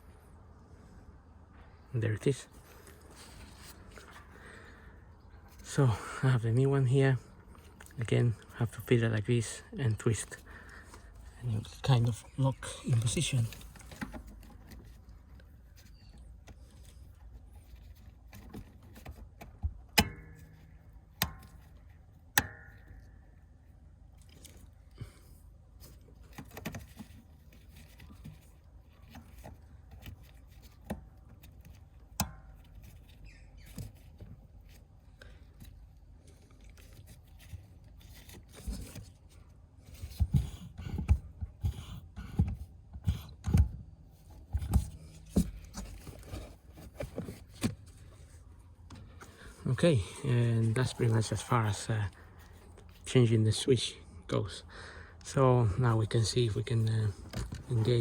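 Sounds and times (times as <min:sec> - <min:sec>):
small clicks and handling noise: 0:10.3 - 0:49.6.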